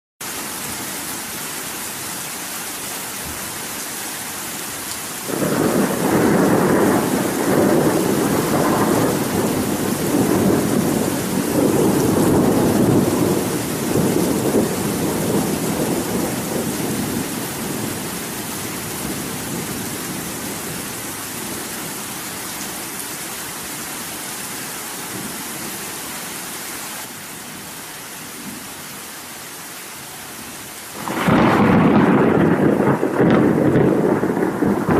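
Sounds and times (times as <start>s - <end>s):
steady rain hissing: 0.2s - 34.9s
thunder rumbling: 5.3s - 20.9s, 31.0s - 34.9s.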